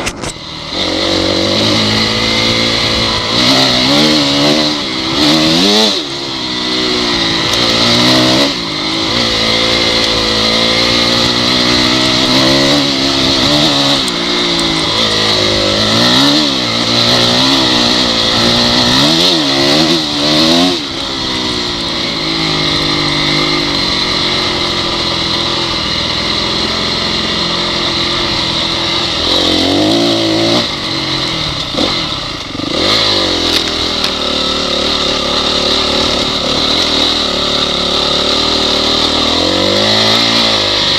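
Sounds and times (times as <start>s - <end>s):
dirt bike engine revving: 0.0s - 40.9s.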